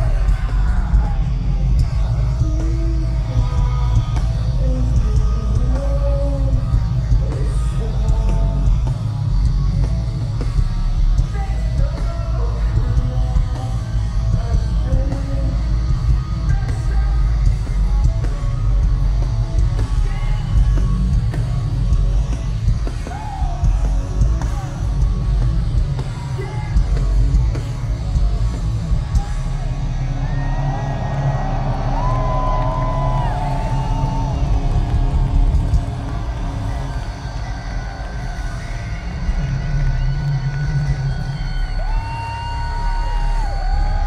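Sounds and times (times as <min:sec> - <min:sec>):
yelled and sung vocals: 0:00.0 - 0:09.2, 0:29.0 - 0:44.0
metal band playing live: 0:00.0 - 0:44.0.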